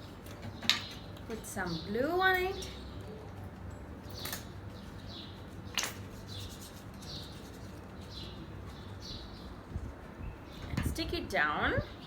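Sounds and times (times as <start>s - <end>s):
bird chirping: 4.0s - 10.8s.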